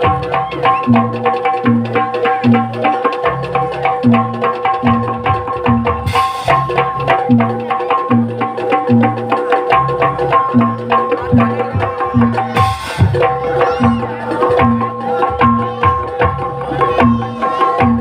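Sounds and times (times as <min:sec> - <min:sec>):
gamelan drums beating: 0:00.0 - 0:18.0
held melodic tones: 0:09.4 - 0:18.0.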